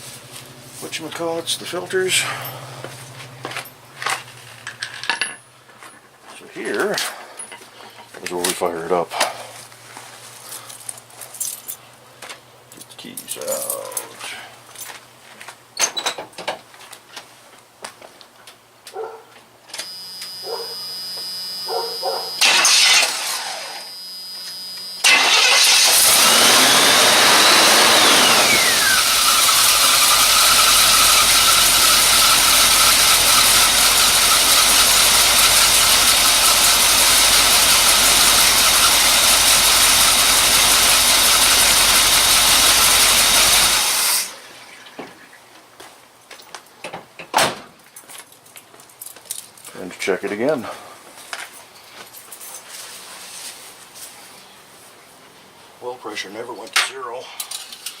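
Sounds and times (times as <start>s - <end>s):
pickup engine starting and running: 19.8s - 44.8s.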